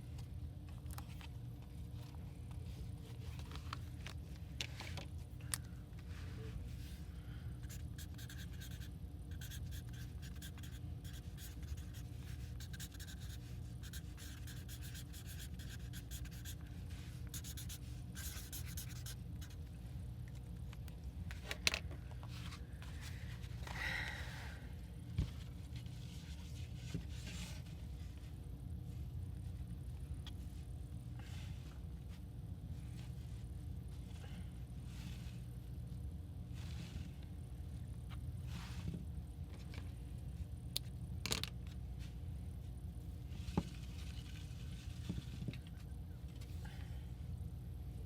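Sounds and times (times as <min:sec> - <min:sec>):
steady low hum: 0:00.0 - 0:48.0
pen scratching on paper: 0:07.6 - 0:16.6, 0:17.3 - 0:19.6.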